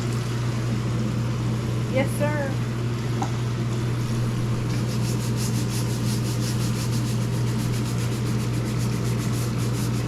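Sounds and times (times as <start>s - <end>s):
steady low hum: 0.0s - 10.0s
rhythmic scrubbing of filter: 4.7s - 10.0s.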